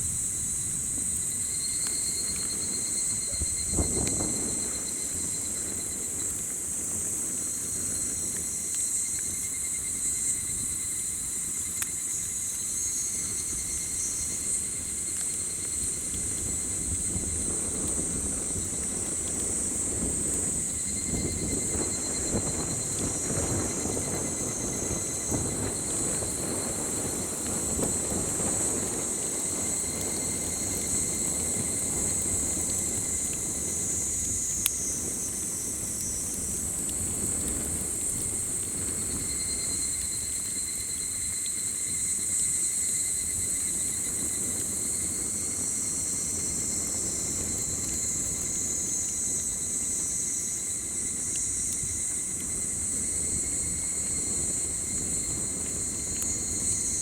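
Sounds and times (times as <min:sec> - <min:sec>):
campfire pop: 0:00.0 - 0:42.0, 0:43.2 - 0:57.0
campfire crackling: 0:00.0 - 0:57.0
insect trill: 0:00.0 - 0:57.0
insects buzzing: 0:00.0 - 0:57.0.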